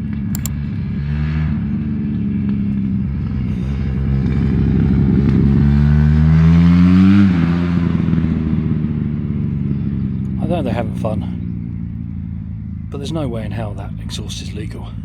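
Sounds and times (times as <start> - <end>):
loud exhaust vehicle accelerating: 0.0 - 15.0.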